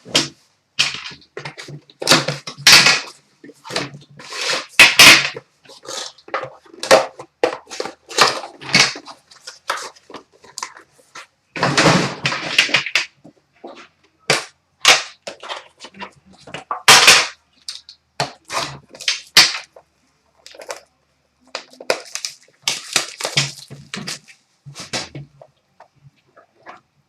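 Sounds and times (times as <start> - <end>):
plastic wrapper crinkling and tearing: 20.4 - 24.9
card pack crackling: 21.5 - 24.9.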